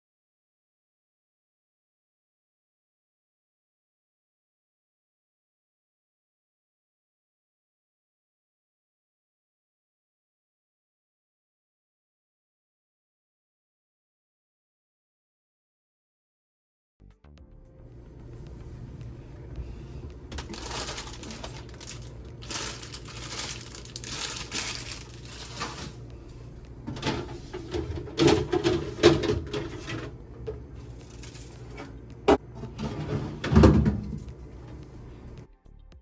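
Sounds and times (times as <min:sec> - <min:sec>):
items knocking and clattering: 0:20.3 - 0:26.0, 0:26.8 - 0:34.4
plastic packaging rustling: 0:20.3 - 0:26.0, 0:30.8 - 0:31.8.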